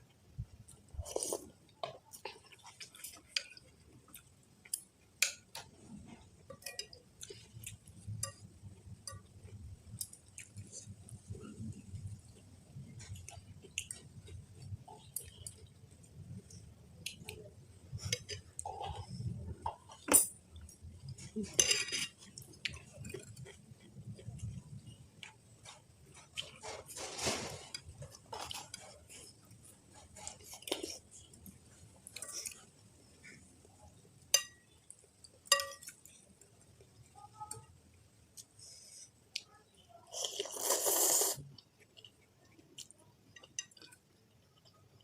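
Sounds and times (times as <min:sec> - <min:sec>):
chewing: 0:00.6 - 0:26.9, 0:27.8 - 0:37.0
cutlery clinking against a bowl: 0:06.4 - 0:09.3, 0:21.0 - 0:23.6, 0:34.3 - 0:36.2, 0:43.3 - 0:44.0.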